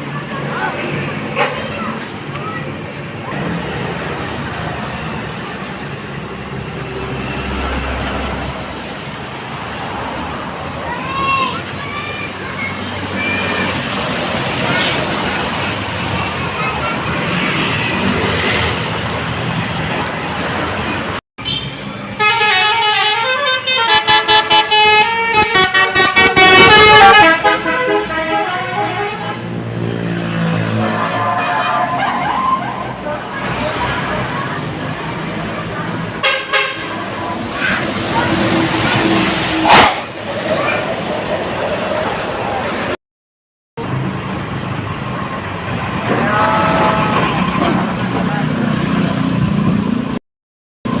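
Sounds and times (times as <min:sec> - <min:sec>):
bus engine rumble: 0:00.0 - 0:43.0, 0:43.8 - 0:50.2
steady traffic noise: 0:00.0 - 0:43.0, 0:43.8 - 0:50.2
bus air horn playing a tune: 0:22.2 - 0:29.6, 0:30.7 - 0:32.4, 0:36.2 - 0:36.9.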